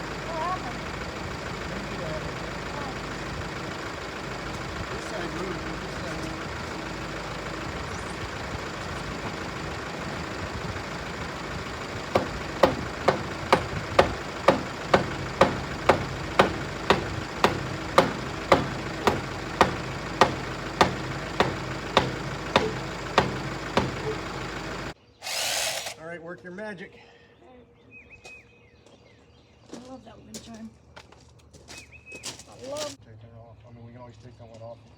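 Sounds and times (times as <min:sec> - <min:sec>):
tractor engine idling: 0:00.0 - 0:25.0
sharp knocks: 0:11.3 - 0:25.0.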